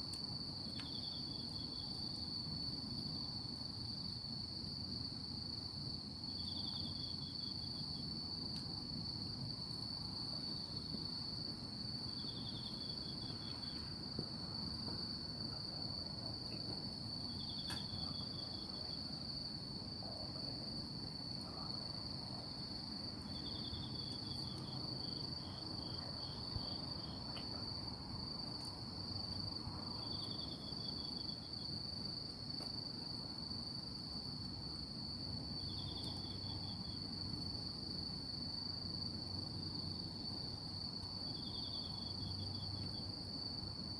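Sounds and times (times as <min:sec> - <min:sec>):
low steady hiss: 0:00.0 - 0:43.9
faint ticks: 0:00.1 - 0:01.0
insect high steady trill: 0:21.4 - 0:32.3, 0:32.9 - 0:43.9.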